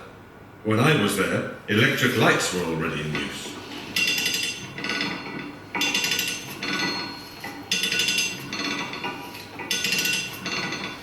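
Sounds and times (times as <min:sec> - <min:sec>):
metallic clanks ringing: 0:04.0 - 0:11.0.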